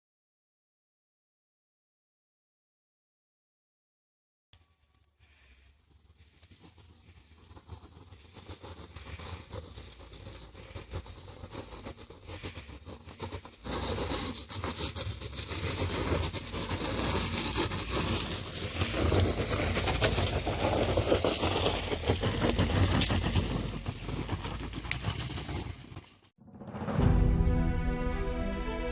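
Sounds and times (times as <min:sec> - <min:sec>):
engine and tyres rumbling: 0:05.2 - 0:26.3.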